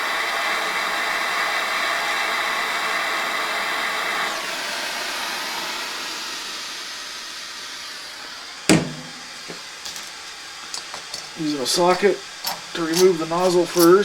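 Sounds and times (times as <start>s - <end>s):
heating tool hissing: 0.0s - 14.0s
sharp knock: 8.7s - 9.6s.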